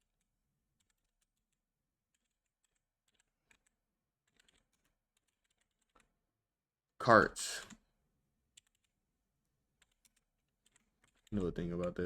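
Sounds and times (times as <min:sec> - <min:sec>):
faint keyboard keystrokes: 0:00.0 - 0:06.2, 0:09.8 - 0:12.0.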